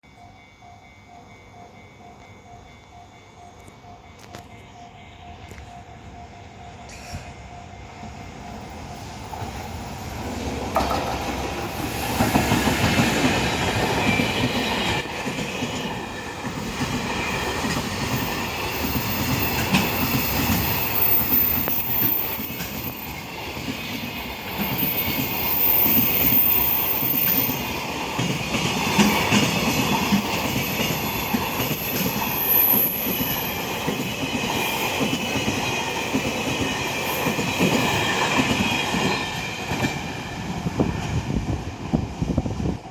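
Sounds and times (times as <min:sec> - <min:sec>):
train wheels clacking over rail joint: 0:06.8 - 0:07.6, 0:09.3 - 0:42.0
high wheel squeal: 0:18.1 - 0:38.3.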